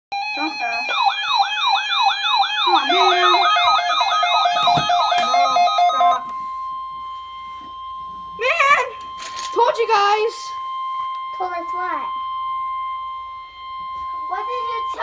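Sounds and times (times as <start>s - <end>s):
rising siren sweep: 0.1s - 15.0s
steady alert tone: 2.5s - 6.2s.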